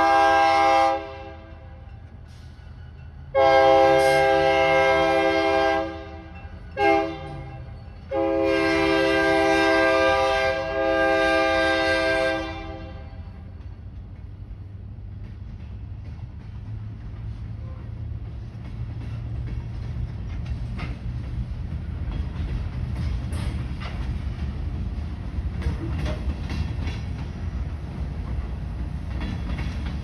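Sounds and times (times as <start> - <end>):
freight train rumbling past: 0.0 - 30.0
wheels clicking over rails: 13.5 - 30.0.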